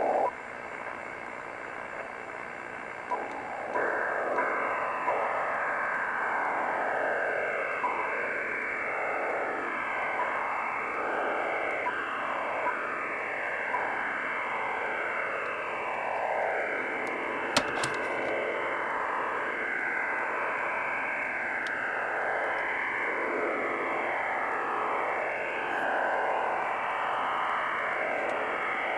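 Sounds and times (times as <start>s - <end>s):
static click: 0.0s - 18.8s, 20.1s - 21.8s, 28.1s - 28.6s
shortwave radio hissing whooshing: 0.0s - 28.9s.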